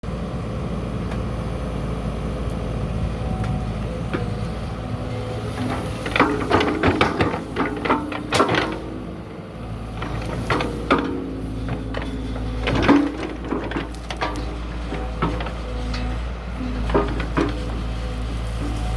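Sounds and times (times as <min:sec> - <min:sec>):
excavator engine running: 0:00.1 - 0:18.9
sharp metal clanks and knocks: 0:05.5 - 0:09.3, 0:09.9 - 0:18.9.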